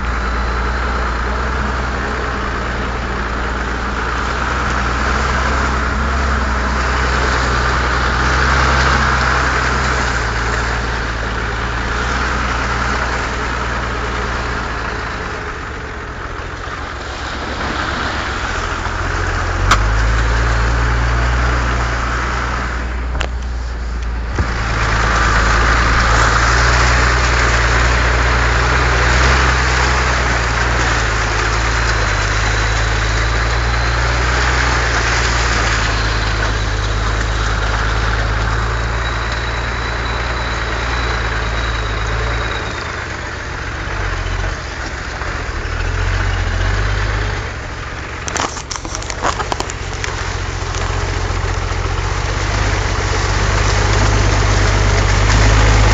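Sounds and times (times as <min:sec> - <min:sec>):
broad rushing noise: 0:00.0 - 0:21.1
vehicle engine droning: 0:00.0 - 0:55.9.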